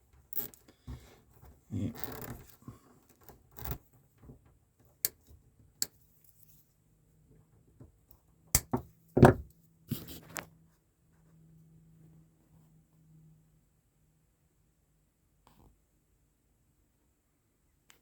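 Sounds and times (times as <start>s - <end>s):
cable knocks and thumps: 8.6s - 9.5s.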